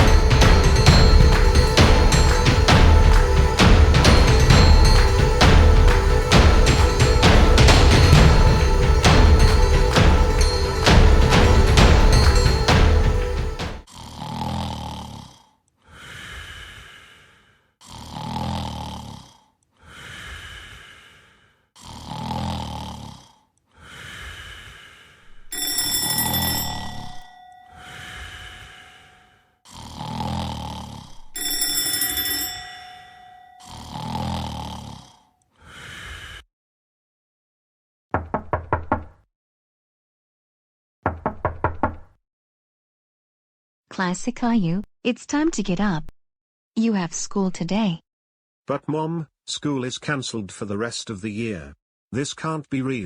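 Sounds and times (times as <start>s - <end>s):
cartoon snoring: 13.8s - 25.4s, 27.7s - 31.5s, 33.6s - 36.5s
whistling snore: 14.0s - 15.5s, 17.8s - 19.4s, 21.8s - 23.3s, 27.9s - 31.2s, 33.6s - 35.3s
knocking on a door: 38.2s - 39.1s, 41.1s - 42.1s.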